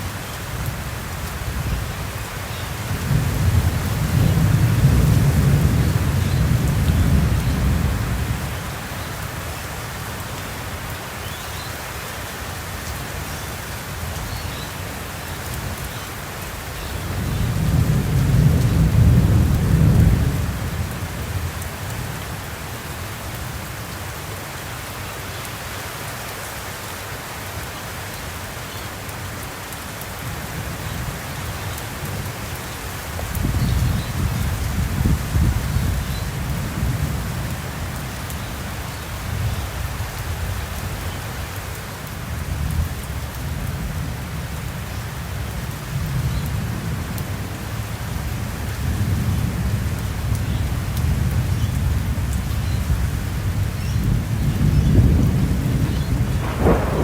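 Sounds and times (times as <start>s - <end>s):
steady rain: 0.0s - 57.0s
rolling thunder: 3.0s - 8.5s, 17.1s - 21.5s, 52.9s - 57.0s.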